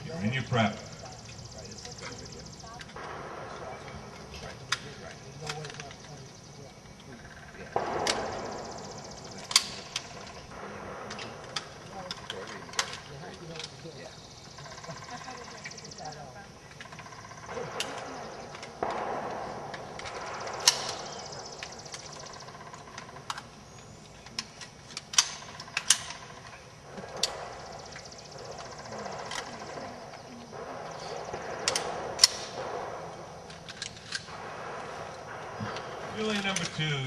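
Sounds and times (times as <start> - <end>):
outdoor background noise: 0.0 - 37.0
rifles being handled clicking: 17.7 - 30.2, 33.5 - 34.5.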